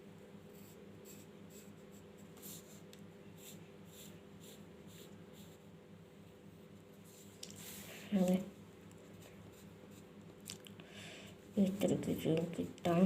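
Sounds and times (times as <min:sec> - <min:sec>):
low steady hum: 0:00.0 - 0:13.0
pencil scratching on paper: 0:00.5 - 0:02.8, 0:03.4 - 0:05.7, 0:09.1 - 0:10.1.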